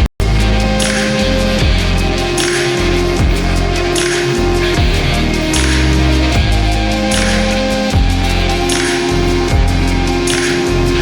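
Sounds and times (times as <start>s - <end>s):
deep bass: 0.0s - 11.0s
heavy kick drum hits: 3.2s - 4.0s, 4.7s - 5.3s, 8.0s - 8.3s, 9.5s - 9.9s.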